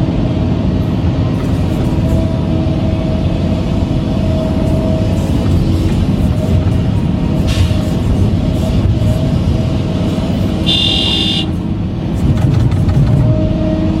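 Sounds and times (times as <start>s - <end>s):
excavator engine running: 0.0s - 13.6s
short high beep: 10.7s - 11.5s.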